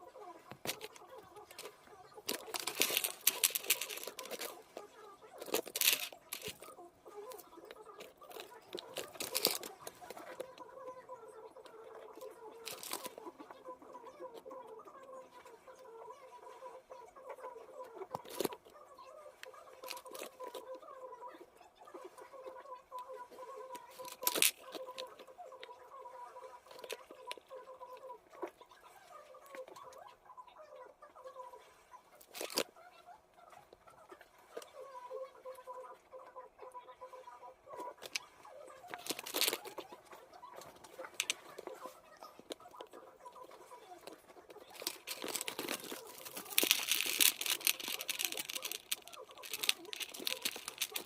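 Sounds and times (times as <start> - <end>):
jewelry clicks and rustles: 0.5 - 10.6, 12.2 - 13.2, 18.1 - 18.7, 19.7 - 20.7, 23.7 - 25.6, 26.6 - 27.5, 32.2 - 32.7, 37.9 - 40.0, 40.6 - 43.0, 44.0 - 51.0
packaging crinkle: 0.6 - 4.6, 5.3 - 6.7, 8.0 - 10.1, 12.6 - 13.1, 19.8 - 20.6, 23.8 - 25.2, 32.2 - 32.7, 38.0 - 39.9, 44.6 - 51.0.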